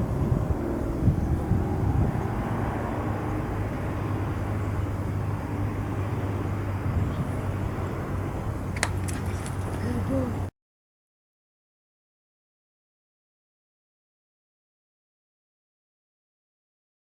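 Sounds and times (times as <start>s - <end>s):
low rumble: 0.0s - 8.7s
low hum: 0.0s - 10.5s.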